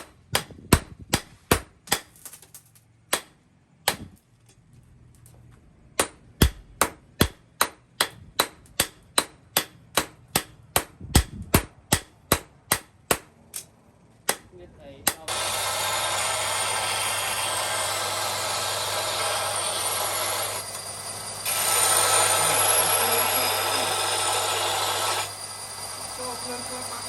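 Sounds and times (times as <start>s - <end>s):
hammer striking steel on anvil: 6.0s - 13.7s, 14.3s - 15.5s.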